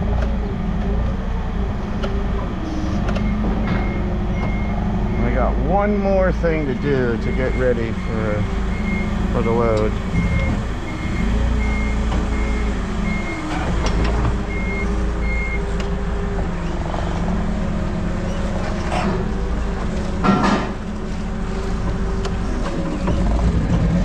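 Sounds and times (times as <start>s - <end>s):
vehicle engine running: 0.0s - 24.0s
reversing alarm beeping: 2.2s - 20.7s
sharp metallic clunk: 20.2s - 20.9s.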